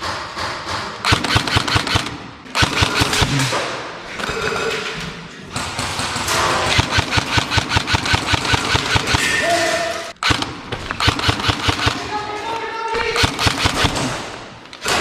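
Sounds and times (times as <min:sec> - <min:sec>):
airsoft rifle rapid shots: 0:00.7 - 0:03.6, 0:05.6 - 0:09.2, 0:10.1 - 0:12.2, 0:13.0 - 0:14.4.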